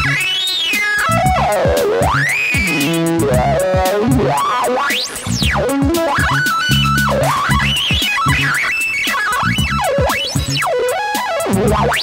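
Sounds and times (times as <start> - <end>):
low bass notes: 0.0 - 0.2, 1.1 - 4.5, 5.2 - 8.6, 9.4 - 10.7, 11.5 - 12.0.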